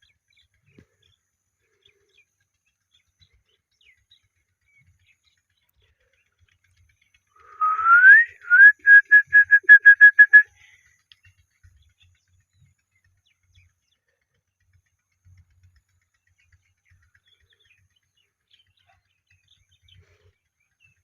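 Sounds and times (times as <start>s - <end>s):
parrot whistling: 7.6s - 10.4s.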